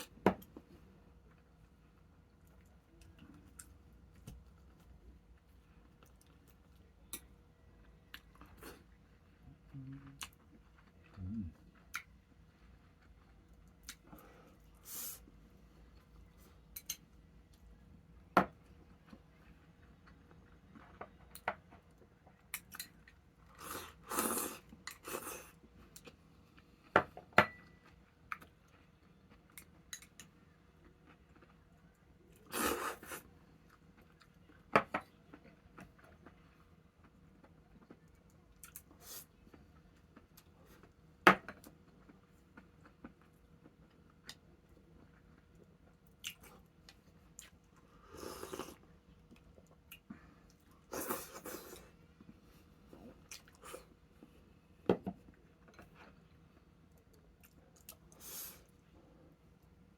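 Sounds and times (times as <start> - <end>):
person chewing: 47.3 - 51.9.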